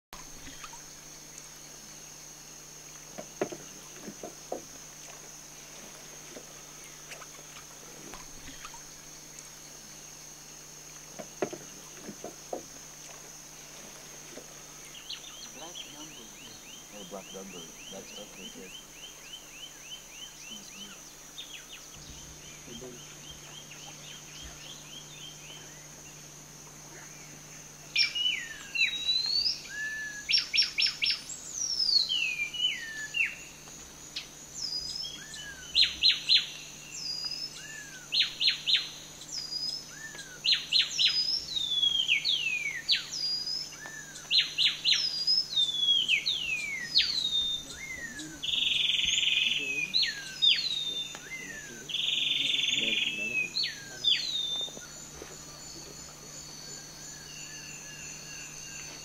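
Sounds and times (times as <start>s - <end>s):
birds whistling and chirping: 27.0s - 33.6s, 34.6s - 59.0s.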